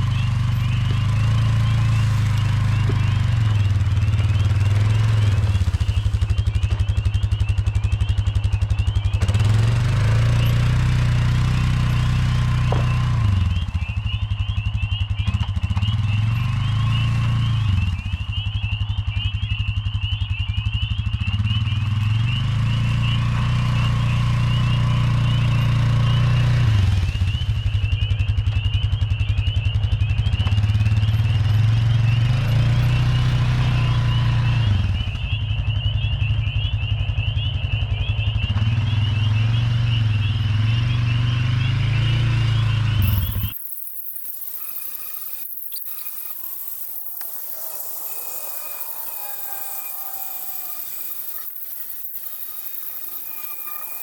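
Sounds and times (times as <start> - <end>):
motor humming: 0.0 - 6.9, 9.2 - 14.2, 43.0 - 54.0
faint high whine: 43.0 - 54.0.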